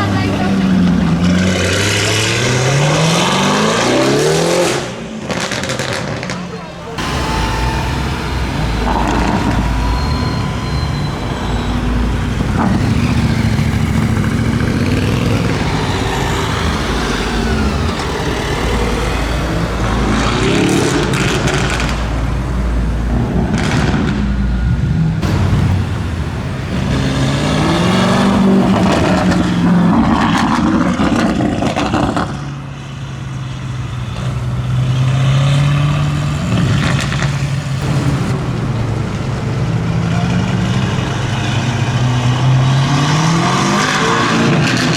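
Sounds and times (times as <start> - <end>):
car engine revving: 0.0 - 44.9
exhaust crackles and pops: 5.1 - 32.7, 36.4 - 39.4.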